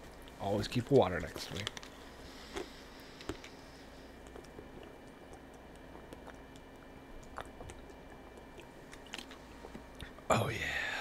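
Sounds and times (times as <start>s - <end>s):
person gulping water: 4.3s - 10.1s.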